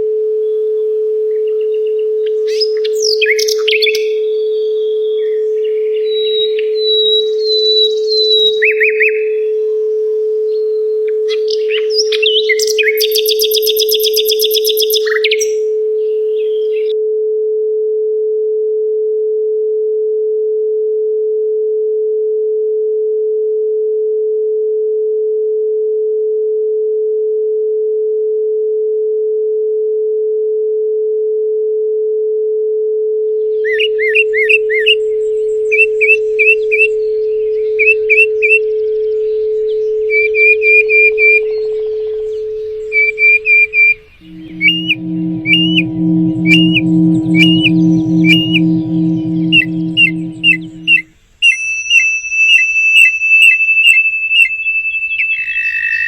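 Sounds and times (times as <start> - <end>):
songbird singing: 11.3 - 15.6
steady sine tone: 11.6 - 15.2, 38.3 - 51.1.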